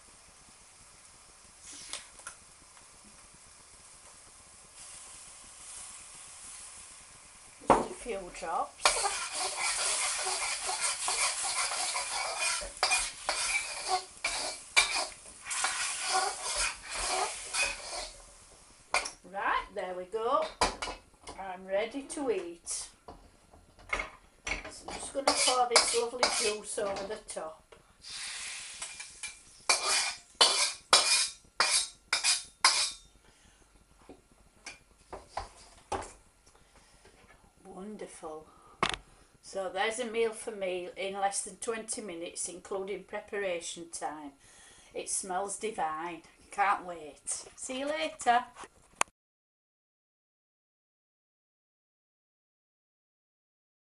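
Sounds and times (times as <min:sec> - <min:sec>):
liquid sizzling in a wok: 0:00.0 - 0:36.4
utensil scraping pan: 0:08.0 - 0:18.3, 0:24.0 - 0:27.3, 0:28.0 - 0:33.0, 0:34.7 - 0:36.2.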